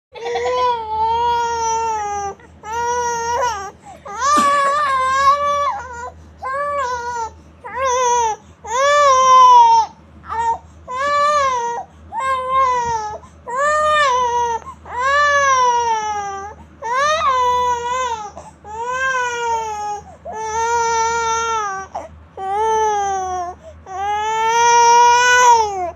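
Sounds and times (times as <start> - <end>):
infant crying: 0.2 - 25.9.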